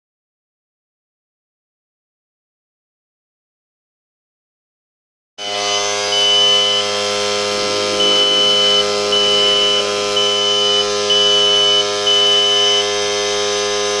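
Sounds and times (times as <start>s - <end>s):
high beep pulses: 5.4s - 13.0s
electric fan motor buzzing: 5.4s - 14.0s.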